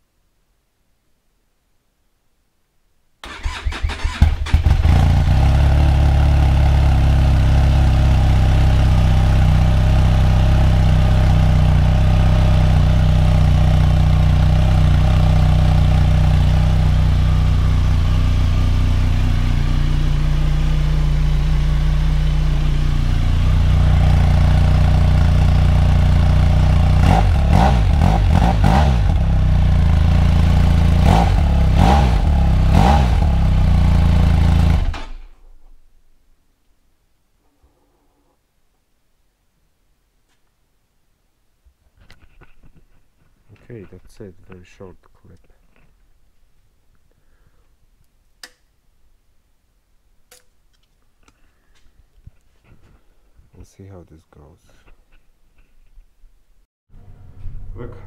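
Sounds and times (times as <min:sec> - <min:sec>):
motorcycle engine revving: 0:03.2 - 0:35.3
motorcycle engine starting and idling: 0:03.2 - 0:35.5.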